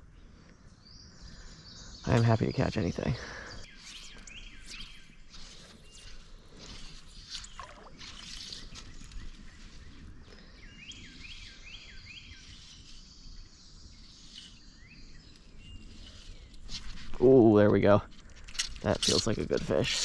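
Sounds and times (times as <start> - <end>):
creek water splashing: 6.7 - 9.6.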